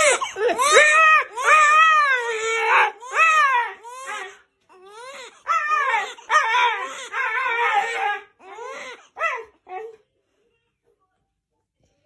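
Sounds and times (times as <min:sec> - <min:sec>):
dog whining and crying: 0:05.0 - 0:10.0.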